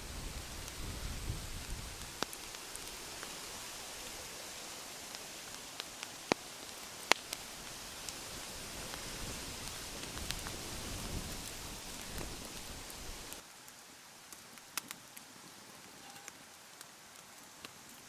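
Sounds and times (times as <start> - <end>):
campfire crackling: 0.0 - 18.0
sharp pops from fire: 1.6 - 3.6, 5.1 - 13.4, 14.3 - 15.0.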